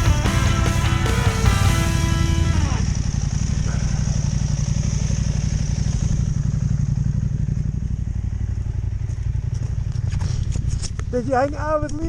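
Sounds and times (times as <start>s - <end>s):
music: 0.0s - 2.8s
motorcycle engine running: 0.0s - 12.0s
clatter: 2.8s - 12.0s
wind: 2.8s - 12.0s.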